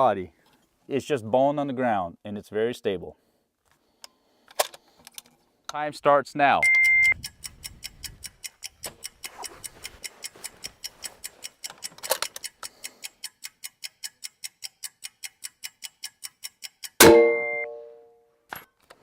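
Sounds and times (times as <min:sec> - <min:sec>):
countdown timer ticking: 0:06.6 - 0:09.3, 0:10.7 - 0:18.1.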